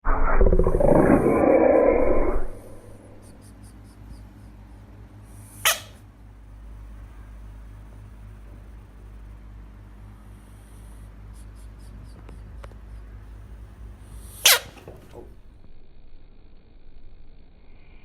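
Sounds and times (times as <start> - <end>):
frog rasping call: 5.6 - 6.0, 14.4 - 15.0.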